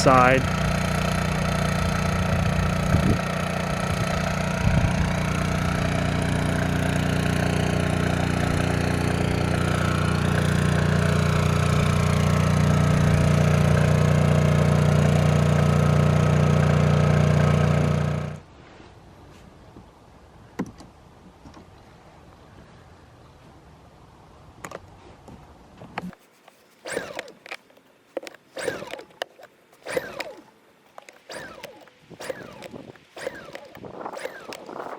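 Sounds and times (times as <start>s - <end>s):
generator engine drone: 0.0s - 18.5s, 26.8s - 27.6s, 28.2s - 29.2s, 29.8s - 34.9s.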